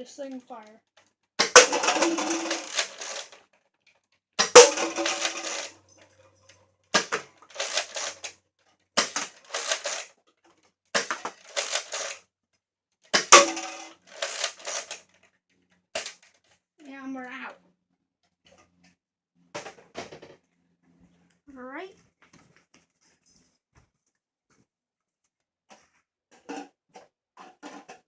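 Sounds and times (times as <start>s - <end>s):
clattering rattle: 1.4s - 3.5s, 4.4s - 8.3s, 11.0s - 12.2s, 13.2s - 15.3s
toy dart blaster snapping: 4.4s - 5.6s.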